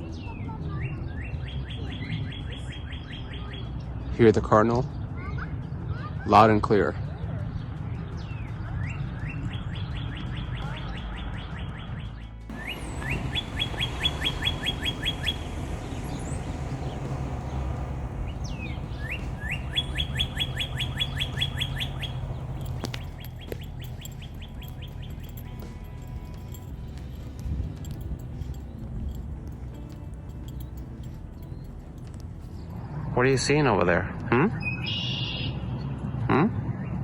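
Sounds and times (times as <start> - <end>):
cardinal singing whistled notes: 12.5 - 25.3.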